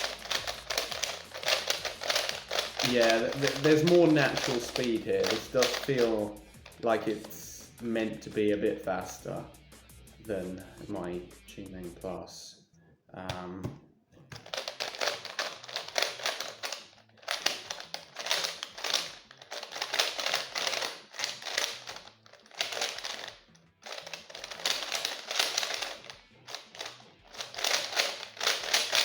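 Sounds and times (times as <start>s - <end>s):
puzzle cube clacking turns: 0.0s - 8.1s, 14.2s - 29.0s.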